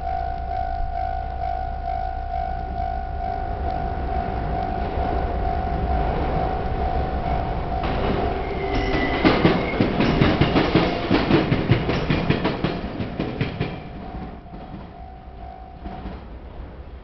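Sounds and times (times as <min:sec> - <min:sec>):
level crossing warning bell: 0:00.0 - 0:16.7
train wheels clattering over rail joints: 0:07.4 - 0:15.1, 0:15.7 - 0:17.0.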